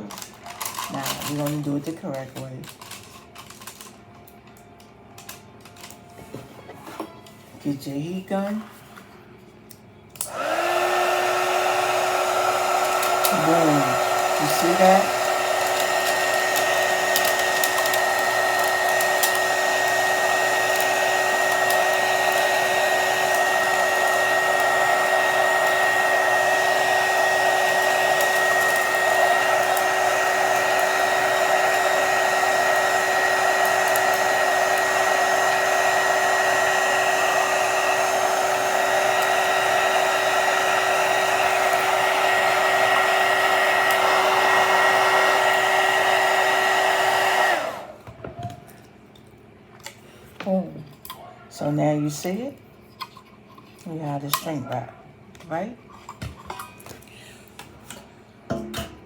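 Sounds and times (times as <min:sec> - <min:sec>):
heat gun blowing: 0:10.2 - 0:48.0.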